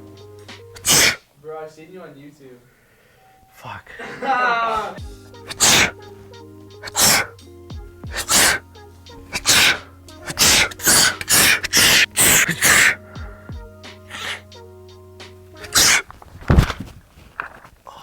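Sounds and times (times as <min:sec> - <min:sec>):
background music: 0:00.0 - 0:01.4, 0:04.1 - 0:16.1
man sneezing: 0:00.8 - 0:01.2, 0:03.9 - 0:06.0, 0:06.8 - 0:07.4, 0:08.1 - 0:08.6, 0:09.3 - 0:13.0, 0:14.1 - 0:14.4, 0:15.6 - 0:16.0.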